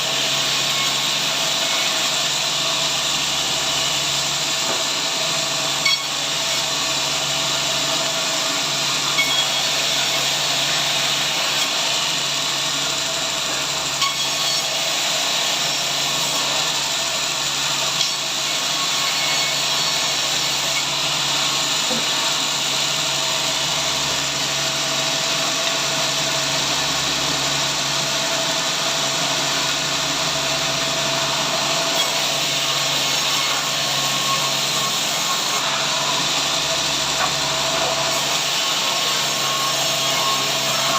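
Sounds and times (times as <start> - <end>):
power saw cutting through log: 0.0 - 40.9.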